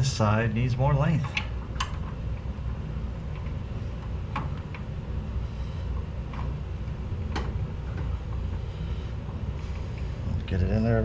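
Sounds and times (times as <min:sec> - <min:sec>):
steady low rumble: 0:00.0 - 0:11.0
light clicks and knocks of parts: 0:01.0 - 0:02.5, 0:06.0 - 0:06.6, 0:07.2 - 0:08.7.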